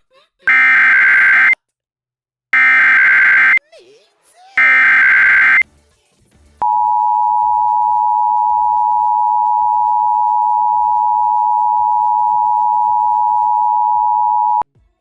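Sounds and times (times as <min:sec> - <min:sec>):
steady dual tone alert: 0:00.5 - 0:01.6, 0:02.6 - 0:03.6, 0:04.6 - 0:05.6, 0:06.6 - 0:14.6.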